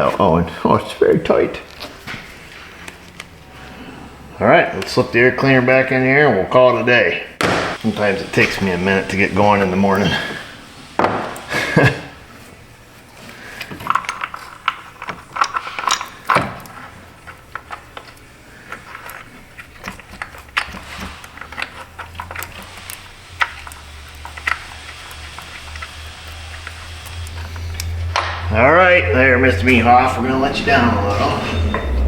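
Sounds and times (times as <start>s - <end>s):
low steady hum: 21.4s - 32.0s
metal tools clinking: 29.7s - 32.0s.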